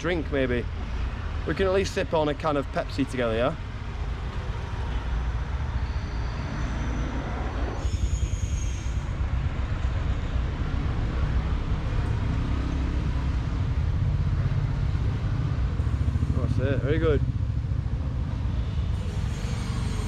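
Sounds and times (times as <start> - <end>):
vehicle engines rumbling past: 0.0 - 20.0
high squeal: 5.5 - 9.4, 18.5 - 20.0.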